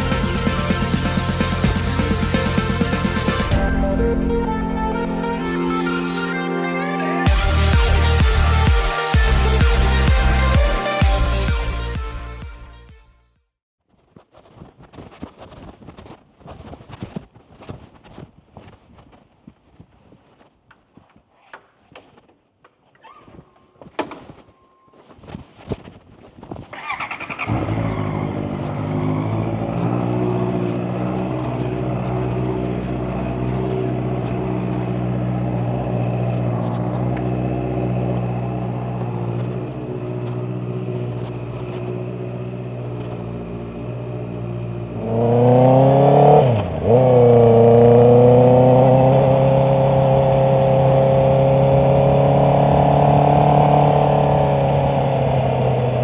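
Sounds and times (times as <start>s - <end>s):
motorcycle engine idling and revving: 0.0s - 6.1s, 7.3s - 13.1s, 26.5s - 56.0s.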